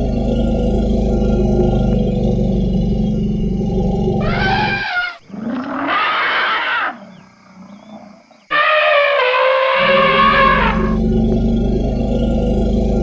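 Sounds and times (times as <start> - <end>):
elephant trumpeting: 4.2 - 7.0, 8.5 - 11.0
elephant deep call: 4.2 - 7.9, 8.5 - 11.0.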